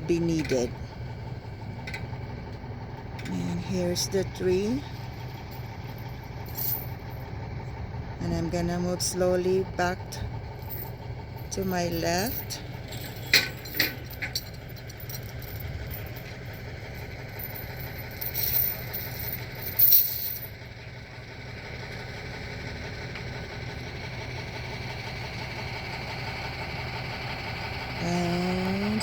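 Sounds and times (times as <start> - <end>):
truck engine idling: 0.0 - 29.0.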